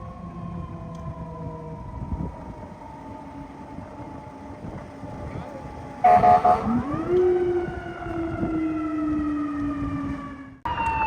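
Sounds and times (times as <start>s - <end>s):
fire truck siren winding: 0.6s - 11.0s
fire truck air horn blast: 6.0s - 6.9s.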